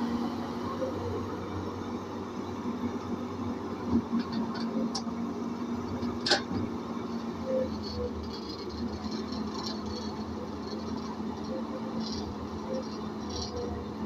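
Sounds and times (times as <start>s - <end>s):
excavator diesel engine running: 0.0s - 14.0s.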